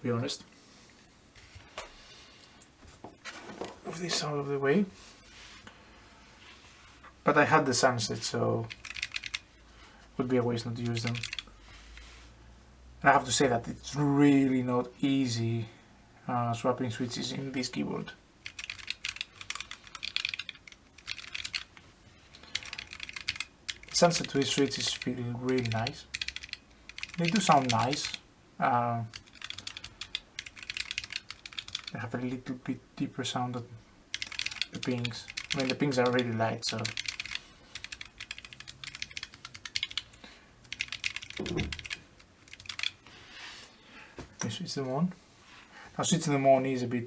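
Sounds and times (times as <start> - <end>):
mechanical keyboard keys clacking: 8.7 - 9.4, 10.9 - 11.4, 18.4 - 21.7, 22.5 - 28.2, 29.1 - 31.9, 34.1 - 40.1, 40.7 - 43.0.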